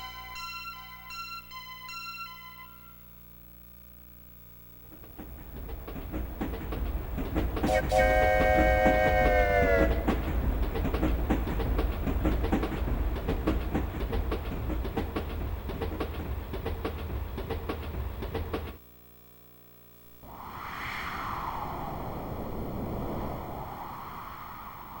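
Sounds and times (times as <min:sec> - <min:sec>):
train rumble and clickety-clack: 0:04.8 - 0:18.8
whooshing with sweeping pitch: 0:20.2 - 0:25.0.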